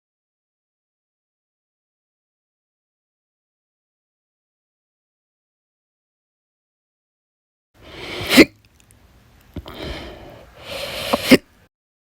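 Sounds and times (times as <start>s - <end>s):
breath in: 7.8s - 8.5s, 9.6s - 11.4s
person hiccuping: 8.2s - 8.6s, 11.1s - 11.5s.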